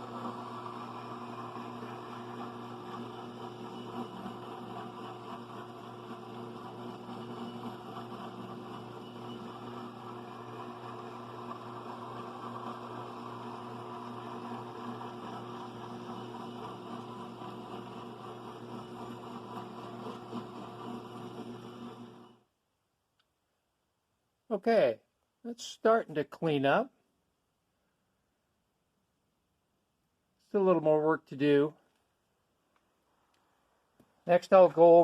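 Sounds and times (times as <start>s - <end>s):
power tool motor hum: 0.0s - 22.4s.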